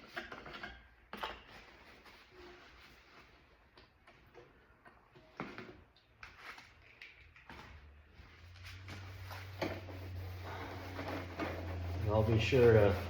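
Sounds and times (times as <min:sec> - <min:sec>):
rag rubbing plastic: 0:08.7 - 0:13.0.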